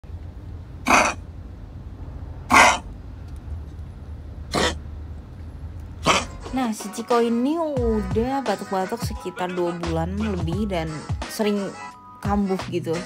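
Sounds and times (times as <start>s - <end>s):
dog coughing: 0.8s - 1.2s, 2.5s - 2.9s, 4.5s - 4.8s, 6.0s - 6.4s.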